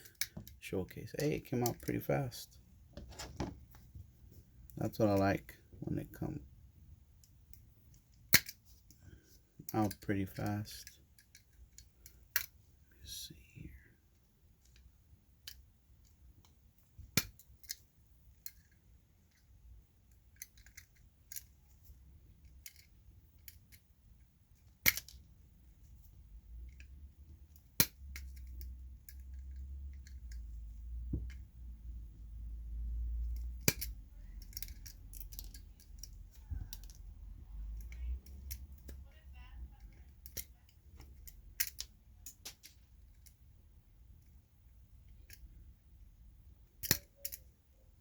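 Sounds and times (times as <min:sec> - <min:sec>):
hand tool clicks and snips: 0:24.8 - 0:25.2, 0:33.3 - 0:37.0, 0:46.8 - 0:47.4.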